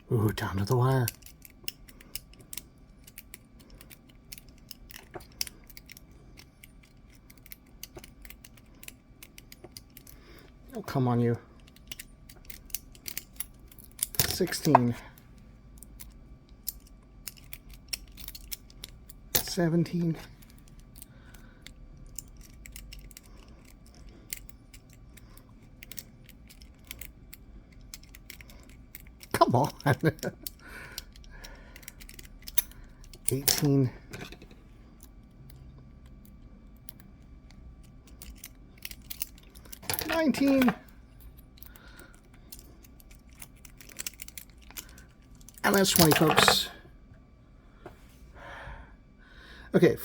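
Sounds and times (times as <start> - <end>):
lock pick clicking in padlock: 11.6 - 14.9, 15.8 - 19.5, 20.4 - 34.4, 41.5 - 46.7.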